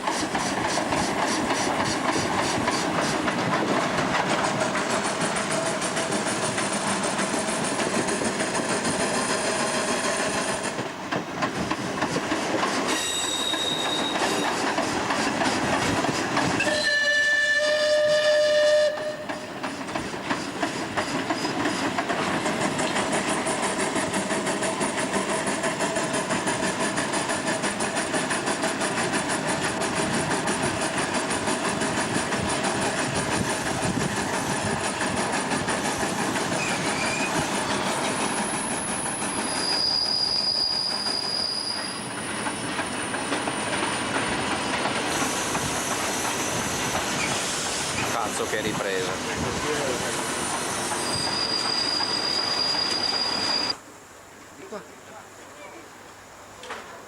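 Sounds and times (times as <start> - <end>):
train wheels clicking over rail joints: 0.0 - 53.8
high wheel squeal: 12.7 - 14.7, 16.6 - 19.4, 20.4 - 21.9, 35.9 - 44.1, 49.6 - 53.8.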